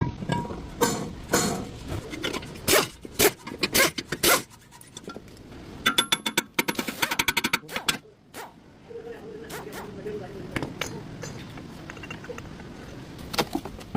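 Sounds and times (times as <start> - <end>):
metallic knocks: 0.0 - 4.3, 5.8 - 8.0.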